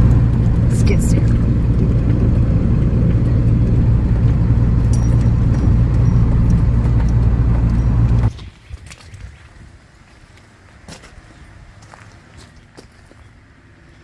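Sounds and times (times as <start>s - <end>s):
vehicle engine idling: 0.0s - 8.3s
keys jingling: 4.7s - 8.3s.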